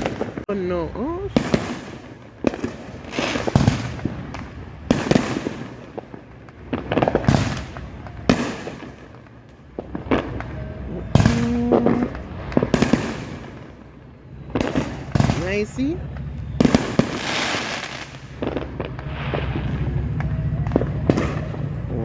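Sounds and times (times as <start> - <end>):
fireworks bangs with crackling: 0.0 - 22.0.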